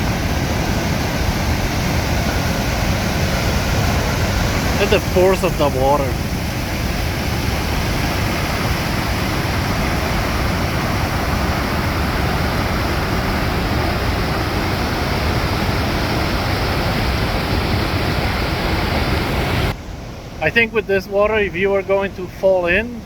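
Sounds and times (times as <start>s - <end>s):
turbulent water rushing: 0.0s - 23.0s.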